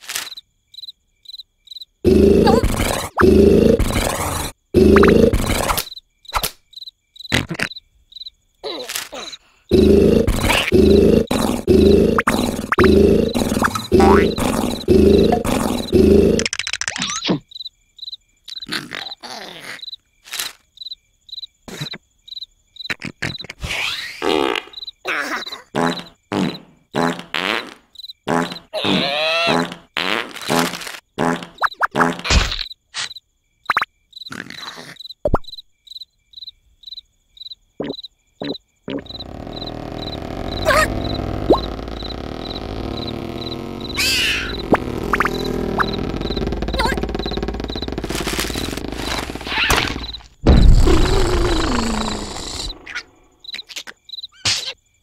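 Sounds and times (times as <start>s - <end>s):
cricket chirping: 0.0s - 55.0s
cartoon snoring: 2.0s - 5.8s, 9.2s - 16.5s, 28.3s - 29.9s, 34.3s - 35.0s, 37.8s - 53.0s
comic squeaks and clicks: 2.1s - 6.6s, 7.3s - 7.8s, 8.6s - 17.4s, 18.5s - 20.6s, 22.8s - 24.2s, 28.4s - 35.6s, 37.8s - 54.8s
short noisy bursts: 9.7s - 16.4s, 39.0s - 52.8s.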